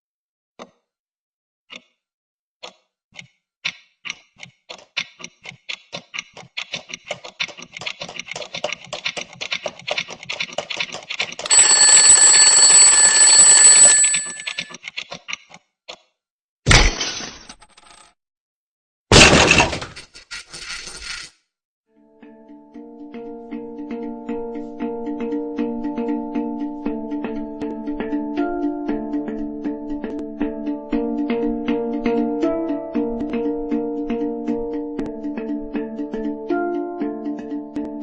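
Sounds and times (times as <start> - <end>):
alarm clock ringing: 11.5 - 14.7
alarm clock ticking: 11.5 - 14.8.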